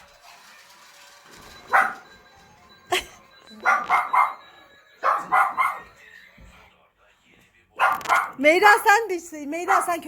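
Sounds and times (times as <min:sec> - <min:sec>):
dog barking: 0:01.7 - 0:02.1, 0:03.6 - 0:06.0, 0:07.8 - 0:08.4, 0:09.7 - 0:10.0.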